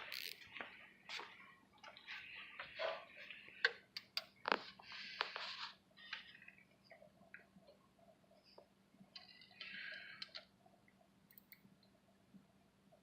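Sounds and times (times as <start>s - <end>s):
rustling and handling noise: 0.0s - 7.7s.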